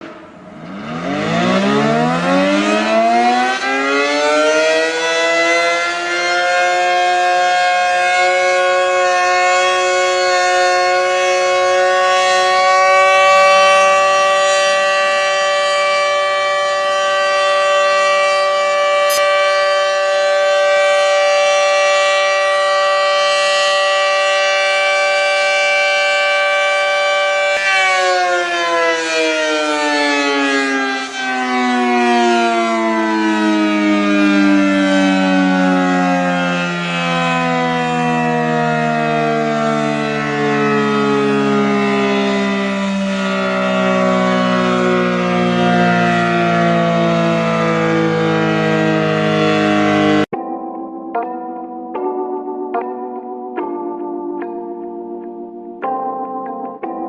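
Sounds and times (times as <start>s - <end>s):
warning siren wailing: 0.0s - 57.0s.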